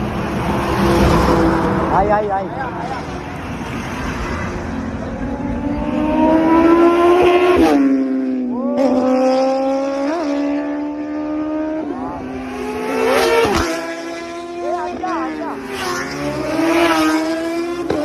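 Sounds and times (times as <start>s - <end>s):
motorcycle engine revving: 0.3s - 18.0s.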